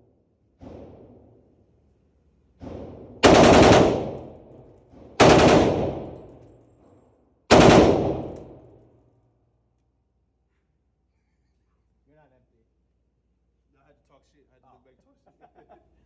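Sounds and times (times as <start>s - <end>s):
rifle shots echoing: 3.2s - 4.6s, 5.2s - 6.4s, 7.5s - 8.7s.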